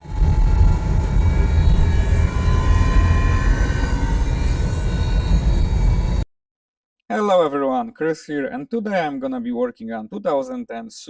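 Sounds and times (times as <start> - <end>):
drivetrain and road rumble: 0.0 - 6.2
transmission whining: 0.0 - 6.2.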